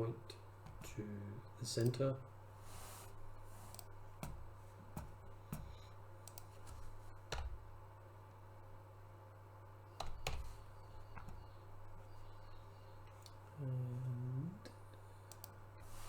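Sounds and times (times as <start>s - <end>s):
steady low hum: 0.0s - 16.0s
computer mouse and keyboard clicks: 3.6s - 7.6s, 10.0s - 11.5s, 15.3s - 15.6s.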